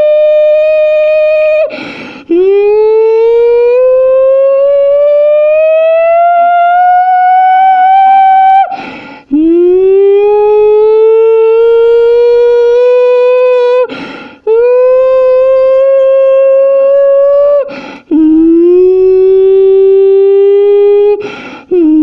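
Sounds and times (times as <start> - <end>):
person imitating siren with voice: 0.0 - 13.9, 14.5 - 22.0
person breathing: 1.7 - 2.4, 8.7 - 9.4, 13.8 - 14.5, 17.7 - 18.2, 21.2 - 21.8.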